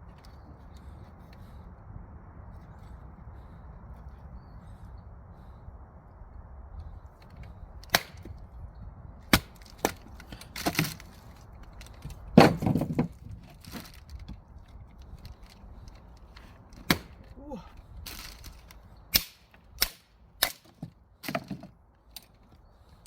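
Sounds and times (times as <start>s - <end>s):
wood splitting crackle: 7.2s - 8.5s, 9.3s - 22.4s
axe striking logs: 7.8s - 8.4s, 9.3s - 11.1s, 12.0s - 14.0s, 16.8s - 17.6s, 19.1s - 21.7s.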